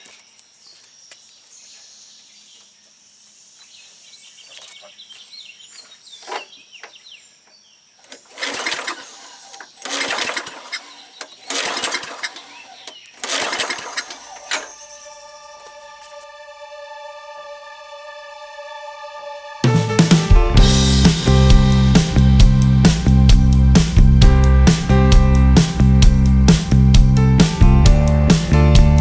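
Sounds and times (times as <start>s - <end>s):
lawn mower pull-start cranking: 8.0s - 15.0s.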